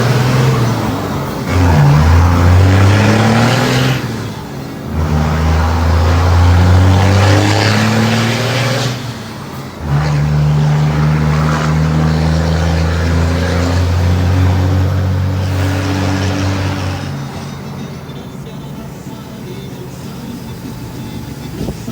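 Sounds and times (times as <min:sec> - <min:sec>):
diesel truck engine revving: 0:00.0 - 0:21.9.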